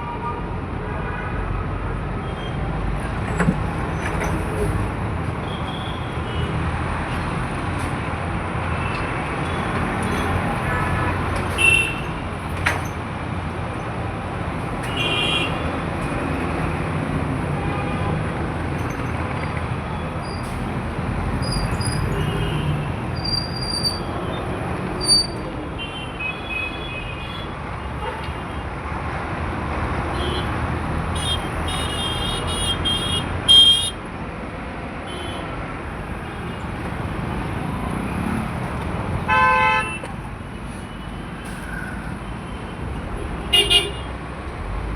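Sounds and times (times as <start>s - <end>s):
busy road traffic: 0.0s - 44.9s
vehicle horns honking: 31.2s - 34.0s, 39.3s - 40.1s, 43.5s - 44.1s.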